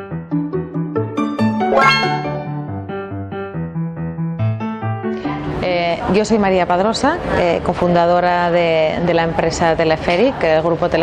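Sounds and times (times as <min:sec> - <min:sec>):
electronic background music: 0:00.4 - 0:02.9.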